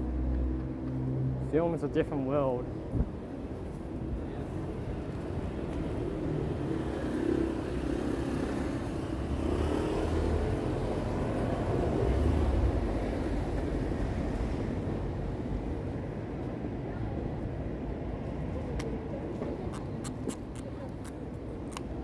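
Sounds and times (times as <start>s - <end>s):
vehicles passing: 4.7s - 16.6s.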